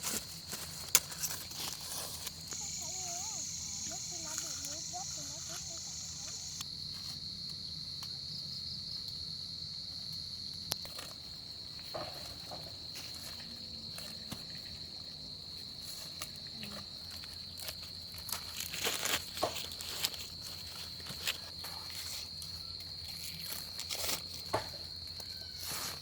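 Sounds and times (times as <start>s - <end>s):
rustles and crackles: 0.0s - 7.6s, 10.7s - 26.0s
high-pitched insect drone: 2.1s - 7.8s.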